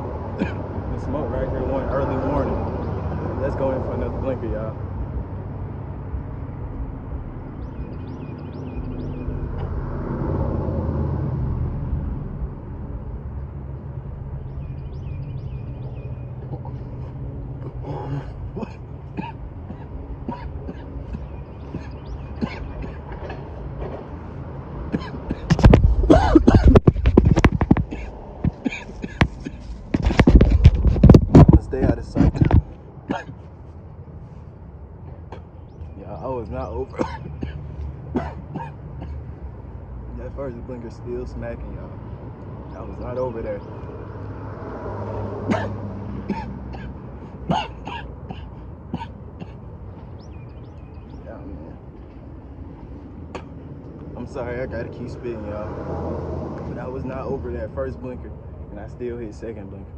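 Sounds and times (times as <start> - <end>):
man coughing hard: 0.4 - 0.8, 17.6 - 23.4, 24.9 - 27.0, 27.8 - 29.7, 32.2 - 33.5, 36.9 - 39.3, 45.4 - 49.7.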